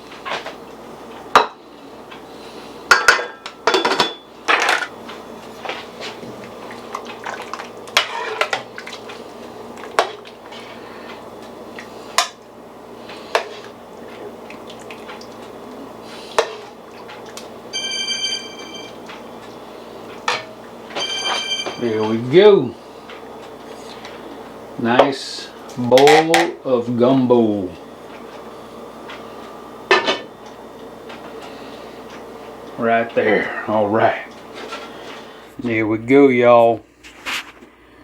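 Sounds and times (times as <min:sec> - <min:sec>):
short ringing clink: 0:17.8 - 0:19.0, 0:21.0 - 0:22.2.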